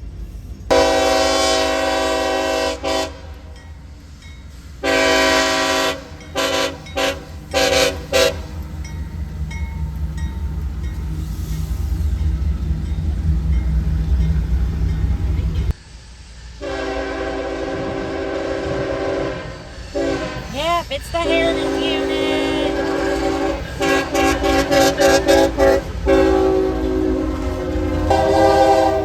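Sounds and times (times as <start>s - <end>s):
train rumble: 0.0s - 29.0s
locomotive air horn: 0.7s - 3.4s, 4.8s - 8.6s, 16.6s - 29.0s.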